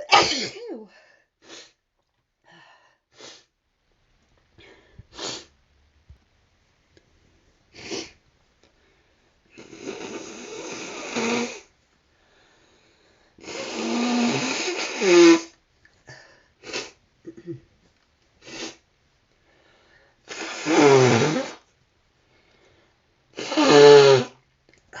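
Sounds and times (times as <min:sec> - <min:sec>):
person sneezing: 0:00.0 - 0:00.8
person sniffing: 0:01.4 - 0:01.8, 0:03.2 - 0:03.5, 0:04.7 - 0:05.5, 0:07.7 - 0:08.2, 0:13.4 - 0:15.5, 0:16.6 - 0:17.0, 0:18.4 - 0:18.8, 0:20.2 - 0:21.6, 0:23.4 - 0:24.4
noisy drawn-out breaths: 0:07.7 - 0:15.5, 0:19.4 - 0:24.4.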